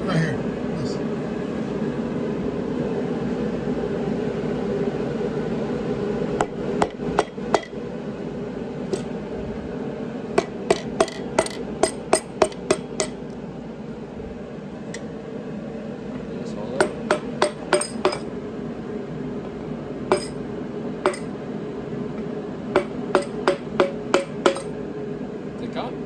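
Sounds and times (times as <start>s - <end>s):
hammer tapping on metal: 6.4s - 7.8s, 10.4s - 13.2s, 16.8s - 18.3s, 20.1s - 20.4s, 21.0s - 21.3s, 22.7s - 24.8s.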